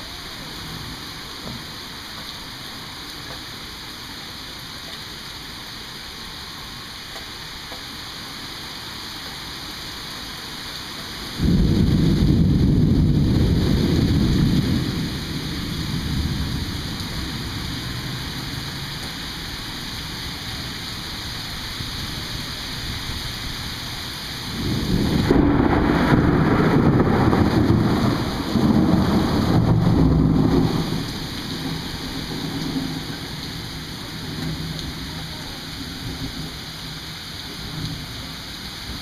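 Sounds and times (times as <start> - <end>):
steady rain: 0.0 - 39.0
thunder clap: 11.4 - 17.0, 24.5 - 33.0.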